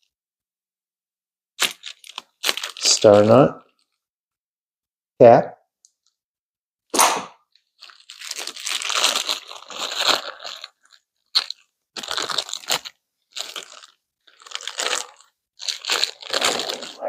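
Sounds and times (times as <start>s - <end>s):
plastic packaging crinkling: 1.6s - 3.9s, 7.6s - 17.0s.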